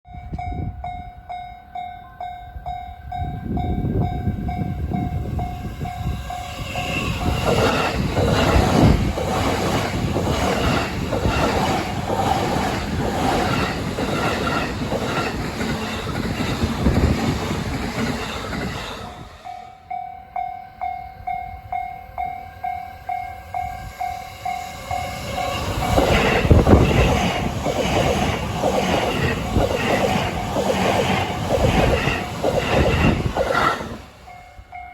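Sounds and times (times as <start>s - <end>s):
train wheels clattering over rail joints: 6.8s - 19.2s, 25.4s - 34.0s.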